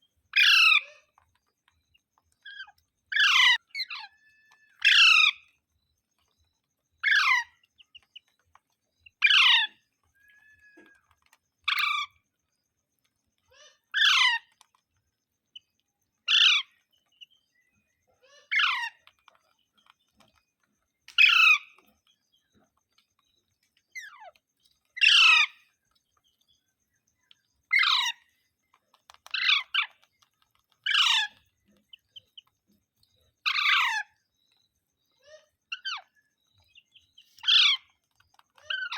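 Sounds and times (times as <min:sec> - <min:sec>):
parrot calling: 0:00.3 - 0:01.2, 0:02.5 - 0:05.5, 0:07.0 - 0:07.6, 0:09.2 - 0:11.0, 0:13.5 - 0:14.7, 0:16.3 - 0:16.8, 0:18.2 - 0:19.2, 0:25.0 - 0:25.6, 0:27.7 - 0:28.3, 0:29.2 - 0:30.0, 0:30.8 - 0:31.4, 0:33.4 - 0:34.2, 0:37.4 - 0:38.0, 0:38.6 - 0:38.9.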